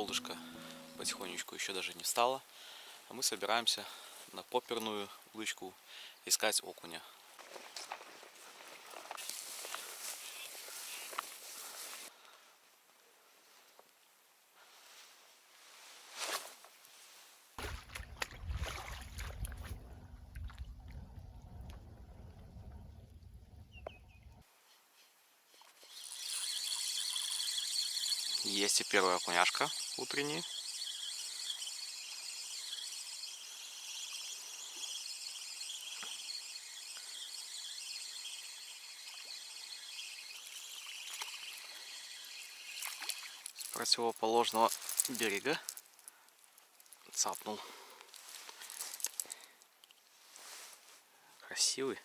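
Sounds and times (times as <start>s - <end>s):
crickets chirping: 0.0s - 1.8s, 25.6s - 49.8s
water sloshing and splashing: 17.6s - 20.9s
low rumble: 19.3s - 24.4s.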